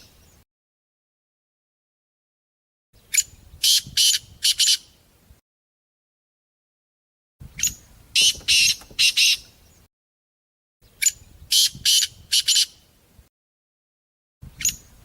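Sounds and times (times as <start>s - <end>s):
partridge calling: 3.2s - 4.9s, 7.6s - 9.5s, 11.0s - 12.8s.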